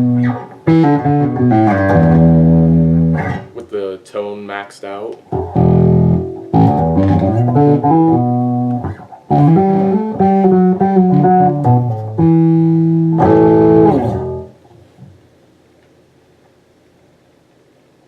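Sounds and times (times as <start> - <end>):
electric bass plucked notes: 0.0 - 3.6, 5.3 - 14.6.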